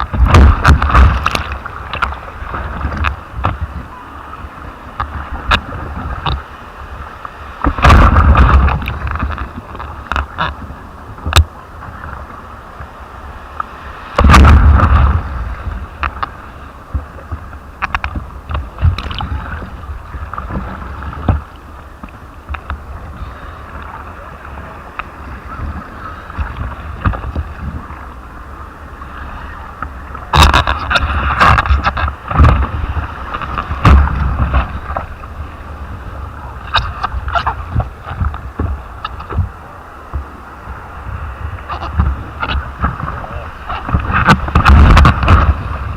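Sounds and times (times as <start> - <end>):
sea surf washing: 0.0 - 45.9
wind buffeting microphone: 0.0 - 45.9.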